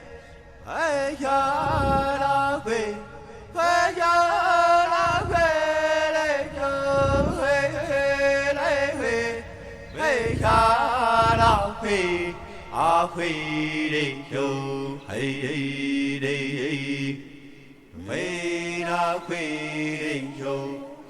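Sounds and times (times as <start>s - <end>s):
breaths: 0.0s - 0.7s, 3.0s - 3.6s, 9.4s - 13.2s
person singing a chant: 0.0s - 21.0s.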